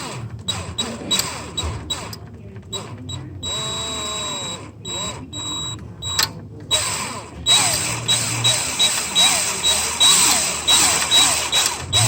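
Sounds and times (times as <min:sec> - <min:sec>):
power drill whining: 0:00.0 - 0:12.0.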